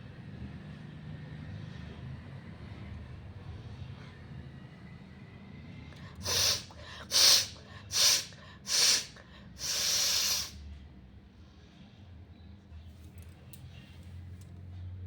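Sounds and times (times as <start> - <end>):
person blowing air through nose: 6.2 - 10.6.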